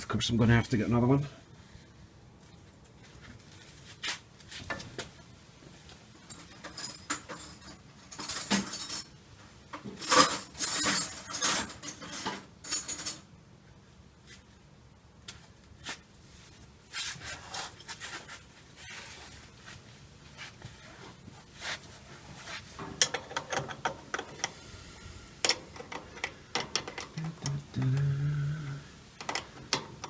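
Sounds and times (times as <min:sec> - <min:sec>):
metal tools clinking and scraping: 0:06.2 - 0:09.2, 0:09.9 - 0:13.3.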